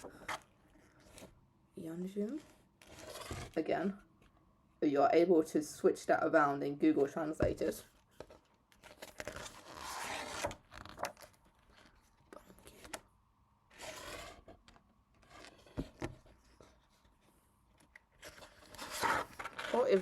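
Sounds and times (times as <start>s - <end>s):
photo book pages turning: 2.3s - 3.6s, 7.9s - 13.0s, 13.7s - 20.0s.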